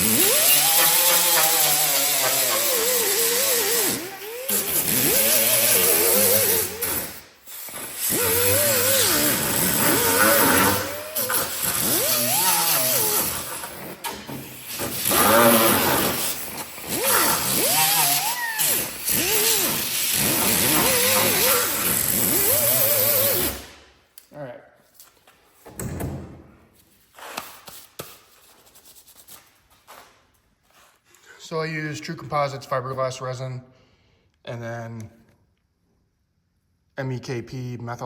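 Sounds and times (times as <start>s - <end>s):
electric grinder whining: 0.0s - 23.6s.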